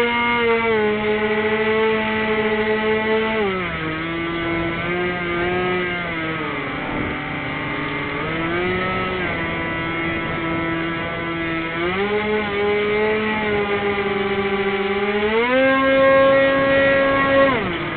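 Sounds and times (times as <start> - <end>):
model plane motors whining: 0.0 - 17.9
wind rushing over microphone: 3.6 - 17.9.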